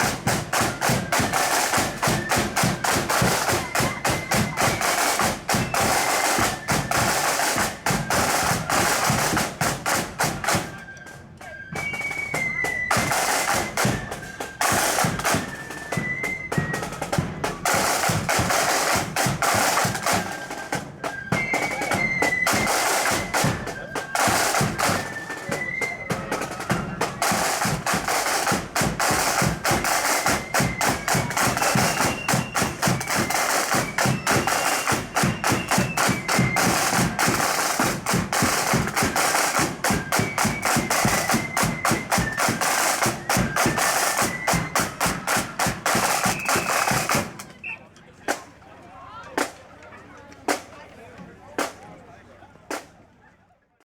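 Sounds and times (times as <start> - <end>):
flutes playing high melody: 0.0 - 47.9
snare drum rolls: 0.0 - 48.5, 49.4 - 49.7, 50.4 - 51.9, 52.7 - 53.0.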